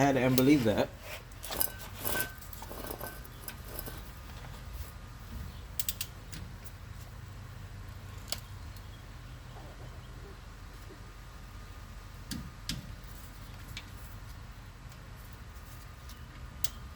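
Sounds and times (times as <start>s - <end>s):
low steady hum: 0.0s - 16.9s
torque wrench clicking: 5.8s - 6.2s.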